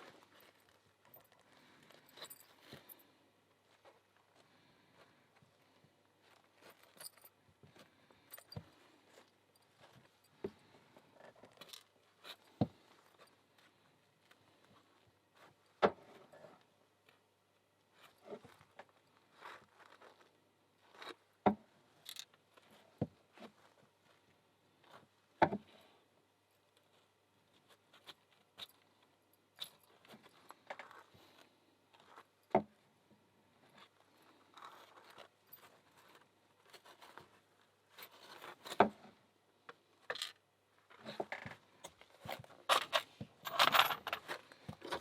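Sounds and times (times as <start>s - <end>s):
small metal lock parts clattering: 0.0s - 3.0s, 6.6s - 7.4s, 22.0s - 22.4s, 27.9s - 31.1s, 40.0s - 40.4s, 41.0s - 45.0s.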